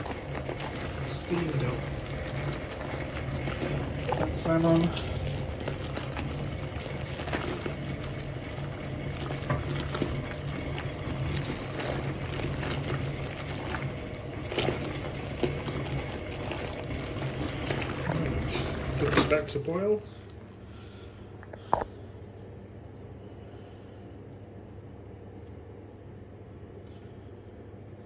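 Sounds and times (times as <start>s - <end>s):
water boiling and bubbling: 0.0s - 22.3s.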